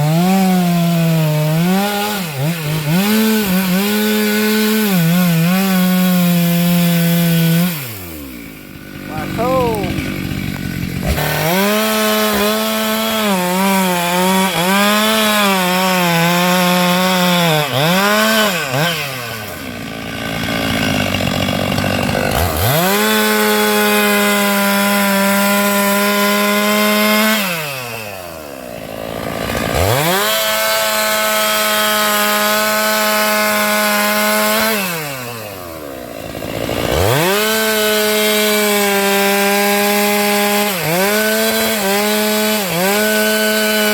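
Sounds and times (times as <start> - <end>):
chainsaw cutting wood: 0.0 - 43.9
chainsaw revving: 0.0 - 43.9.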